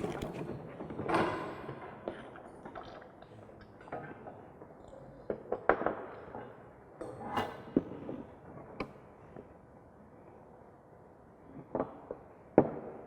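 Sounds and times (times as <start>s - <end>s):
pipe fittings clicking and knocking: 0.0s - 0.4s
pipe fitting scraping: 0.0s - 0.5s.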